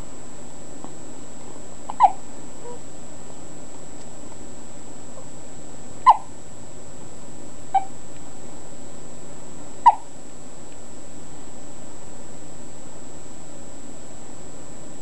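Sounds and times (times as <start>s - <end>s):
faint high whine: 0.0s - 15.0s.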